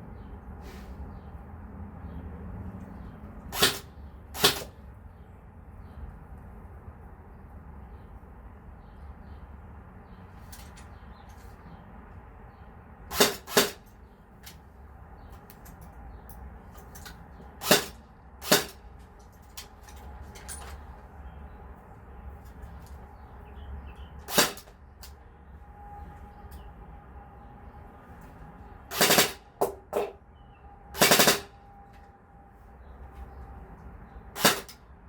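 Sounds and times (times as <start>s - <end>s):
airsoft gun shots: 3.6s - 4.7s, 13.1s - 13.8s, 17.6s - 18.8s, 24.3s - 24.7s, 28.9s - 30.1s, 31.0s - 31.5s, 34.4s - 34.8s.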